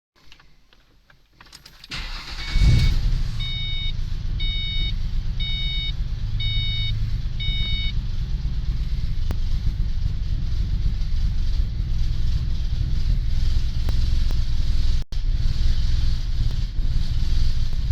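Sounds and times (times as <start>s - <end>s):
ignition clicks: 0.2s - 10.1s
car engine starting and idling: 0.2s - 17.9s
car warning chime beeping: 1.9s - 8.5s.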